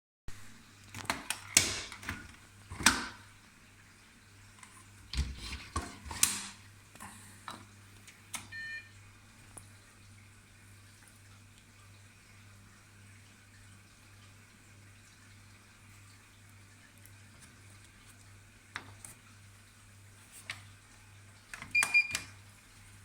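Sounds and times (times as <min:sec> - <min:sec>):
washing machine door and control clicks: 0:00.9 - 0:03.2, 0:08.3 - 0:08.6, 0:21.5 - 0:22.4
short electronic beep: 0:08.5 - 0:08.9.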